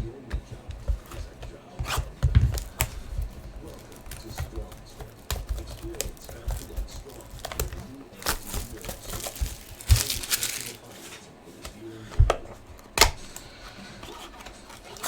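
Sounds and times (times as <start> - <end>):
cards being handled: 0.0 - 15.0
wrappers crinkling and tearing: 1.9 - 11.2.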